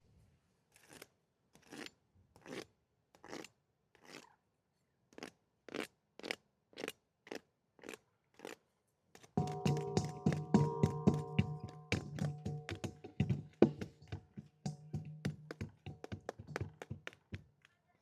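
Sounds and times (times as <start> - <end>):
crunching scrapes of crumbly tofu: 0.7 - 4.3.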